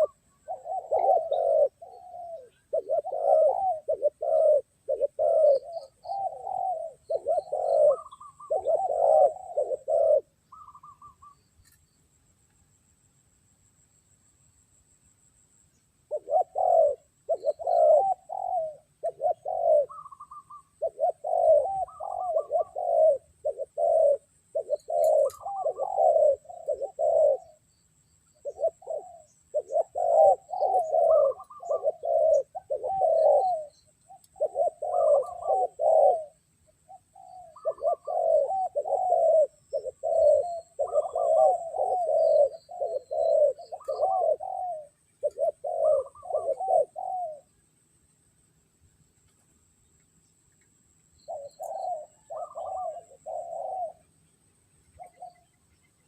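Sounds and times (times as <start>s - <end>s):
doves cooing: 0.0s - 11.8s, 16.0s - 48.4s, 51.1s - 56.0s.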